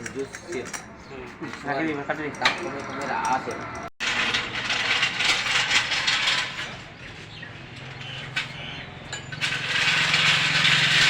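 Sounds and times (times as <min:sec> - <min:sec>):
metallic rattling: 0:02.2 - 0:11.0.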